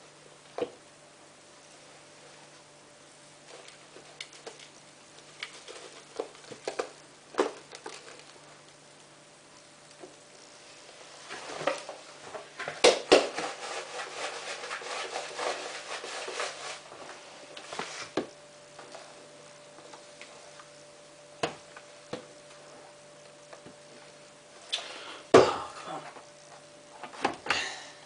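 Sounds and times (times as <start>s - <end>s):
powder pouring rustle: 1.6s - 18.2s.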